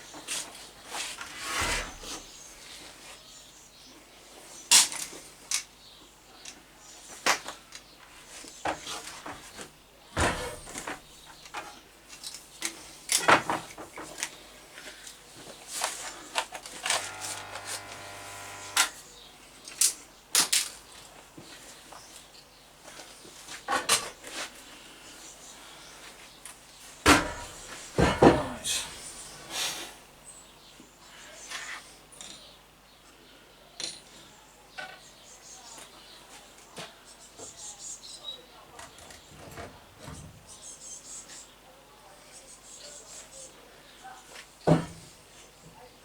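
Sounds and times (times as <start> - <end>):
buzzing hum: 16.8 - 19.1.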